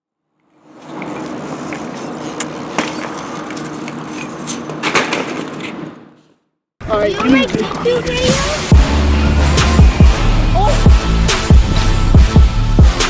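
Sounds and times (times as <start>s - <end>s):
wheels rolling over pavement: 0.3s - 6.4s.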